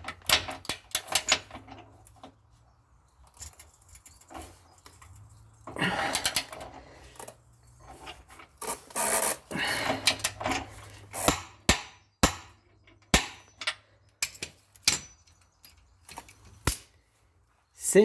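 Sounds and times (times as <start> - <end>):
sharp knocks on metal: 11.3 - 13.6.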